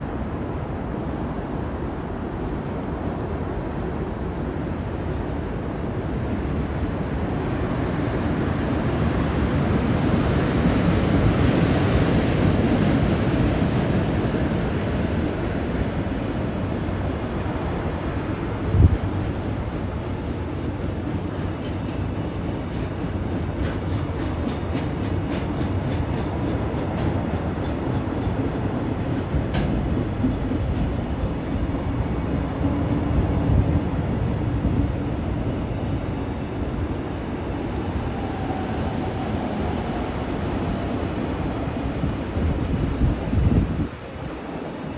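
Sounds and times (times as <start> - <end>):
freight train rumbling: 0.0 - 44.9
faint train brake squeal: 2.3 - 4.0, 27.3 - 28.3
wheels clicking over rail joints: 18.4 - 31.6.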